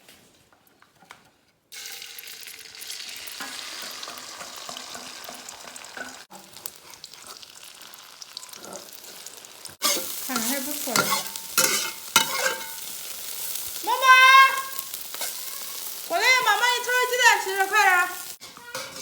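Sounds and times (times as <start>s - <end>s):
eggs sizzling in hot oil: 1.7s - 19.0s
clicks of food stir-fried: 9.7s - 19.0s.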